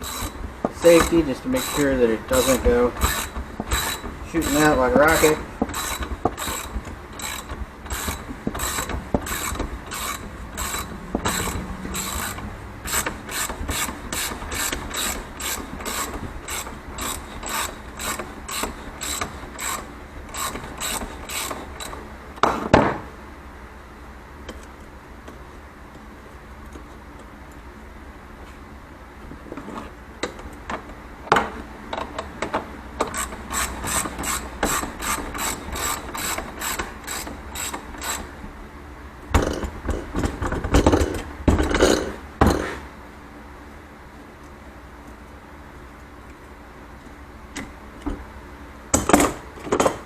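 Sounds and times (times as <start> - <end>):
ratchet wrench clicking: 0.0 - 22.0, 33.0 - 38.3.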